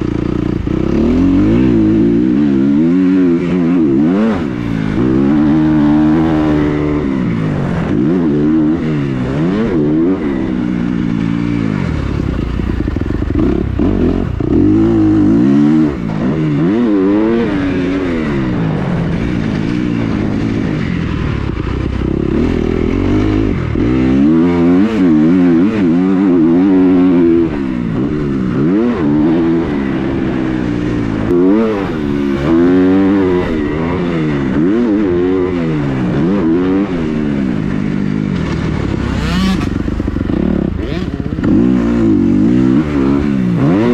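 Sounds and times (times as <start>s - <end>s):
dirt bike engine revving: 0.0s - 43.9s.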